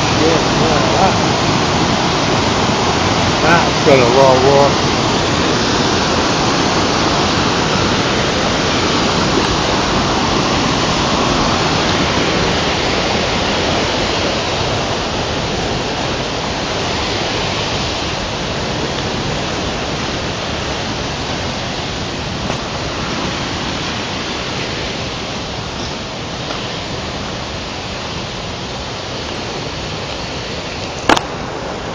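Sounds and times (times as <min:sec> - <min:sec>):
water rushing over wall: 0:00.0 - 0:31.9.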